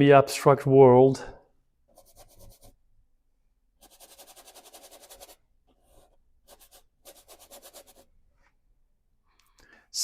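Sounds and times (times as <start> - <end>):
brush scrubbing paint: 1.8 - 2.9, 3.8 - 8.5.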